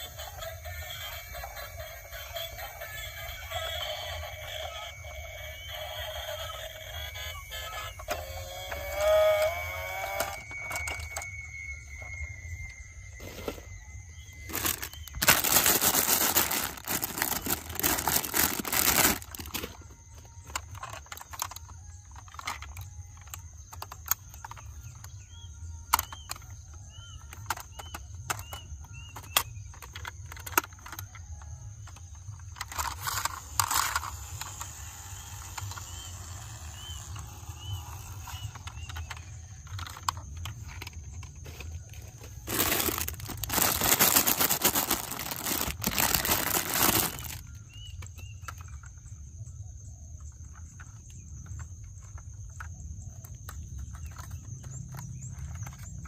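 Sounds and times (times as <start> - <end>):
toys clicking and knocking: 0.0 - 13.6, 14.5 - 49.4, 50.1 - 56.0
loud rustling: 14.5 - 19.8, 42.4 - 47.4.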